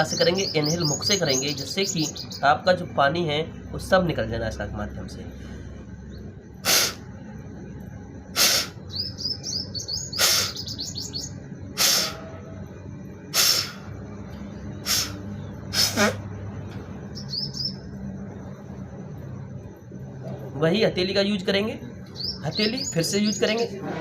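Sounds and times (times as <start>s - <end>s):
birds chirping: 0.0s - 24.0s
sharp blows of breath through nose: 6.6s - 7.1s, 8.4s - 8.8s, 10.2s - 10.6s, 11.7s - 12.3s, 13.3s - 13.9s, 14.8s - 16.2s.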